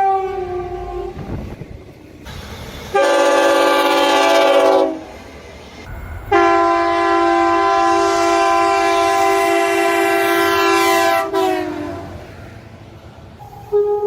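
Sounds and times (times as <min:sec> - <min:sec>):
locomotive air horn blasts: 0:00.0 - 0:01.4, 0:02.3 - 0:05.2, 0:06.3 - 0:12.3, 0:13.4 - 0:14.0.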